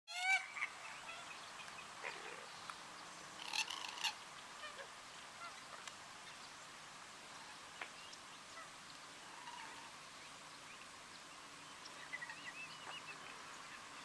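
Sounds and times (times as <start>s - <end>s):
harsh wetland bird call: 0.1s - 2.7s, 3.3s - 6.5s, 7.3s - 10.0s, 11.7s - 14.0s.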